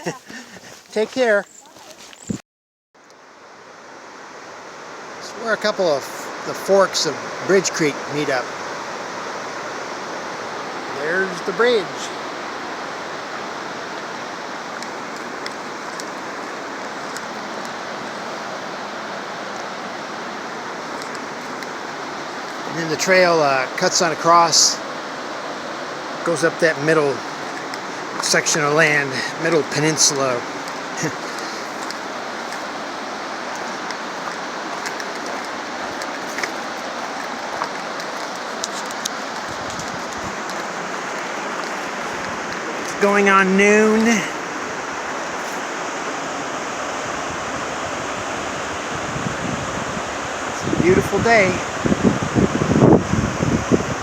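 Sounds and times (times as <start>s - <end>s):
creek water rushing: 0.0s - 2.3s, 3.0s - 54.0s.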